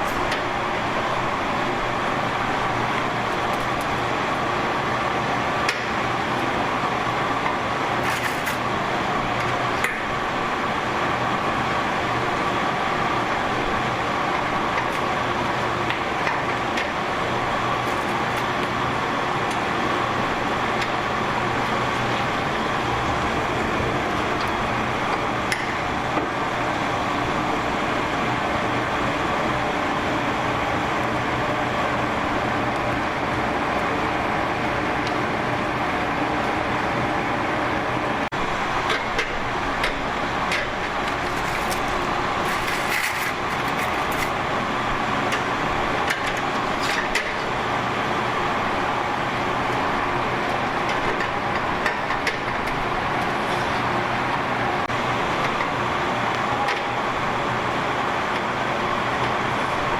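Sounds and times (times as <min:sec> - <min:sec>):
steady machine hum: 0:00.0 - 0:59.9.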